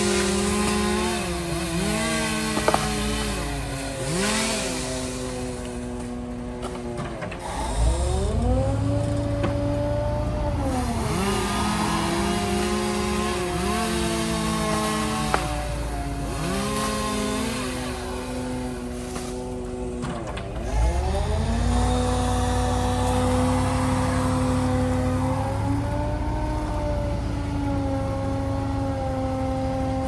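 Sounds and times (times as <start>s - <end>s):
engine revving up and down: 0.0s - 5.4s, 7.4s - 18.8s, 20.5s - 30.0s.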